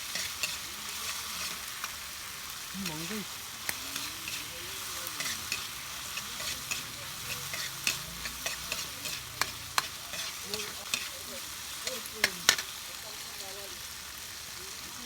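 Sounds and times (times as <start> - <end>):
utensil scraping a pan: 0.0 - 2.0, 2.8 - 12.7
food sizzling in a pan: 0.0 - 15.0.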